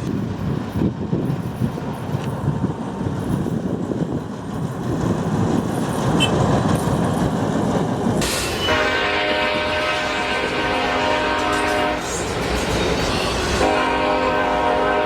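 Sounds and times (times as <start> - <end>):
train running: 0.0 - 15.0
locomotive air horn chord: 8.6 - 12.3, 13.2 - 15.0.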